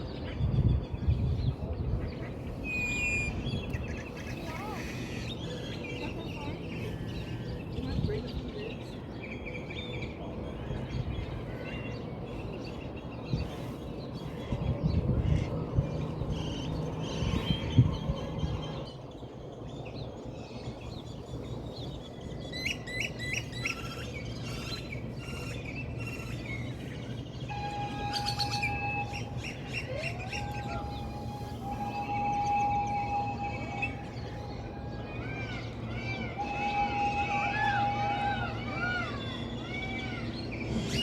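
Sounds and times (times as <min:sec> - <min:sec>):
birds chirping: 0:00.0 - 0:41.0
low rumbling noise: 0:00.0 - 0:41.0
whistle-like bird note: 0:27.5 - 0:38.5.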